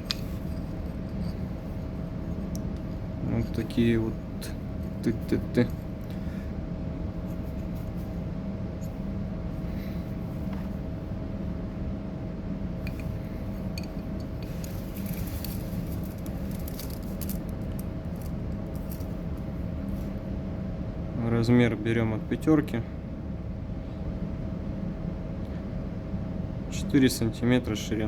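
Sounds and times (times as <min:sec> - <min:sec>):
small parts clicking and rustling: 0:00.0 - 0:03.0, 0:12.8 - 0:20.0
steady background hum: 0:00.0 - 0:28.0.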